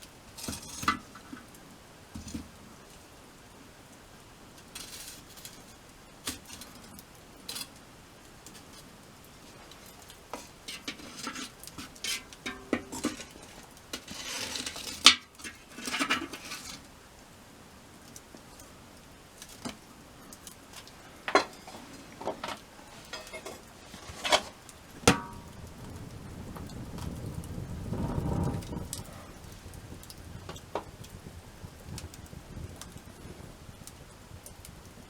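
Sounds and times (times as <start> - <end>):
utensils clinking on cookware: 10.7 - 13.6, 21.3 - 25.5.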